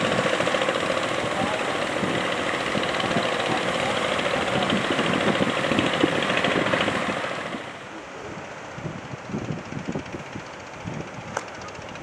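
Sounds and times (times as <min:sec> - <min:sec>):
boat engine chugging: 0:00.0 - 0:08.1.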